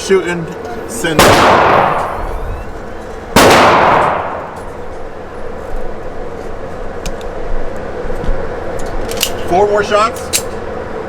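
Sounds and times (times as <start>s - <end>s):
pistol shot: 1.2s - 2.5s, 3.3s - 4.6s.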